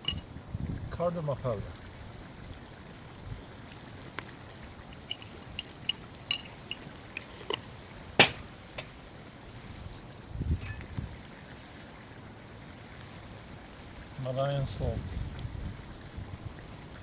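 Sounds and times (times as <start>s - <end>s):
spoon clinking on spice containers: 4.9s - 8.4s.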